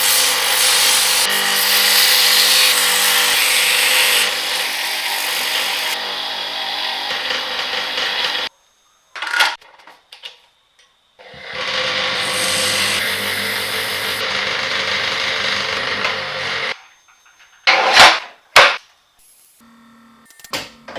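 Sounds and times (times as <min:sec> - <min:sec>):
power tool running on metal: 0:00.0 - 0:08.5, 0:11.2 - 0:16.8.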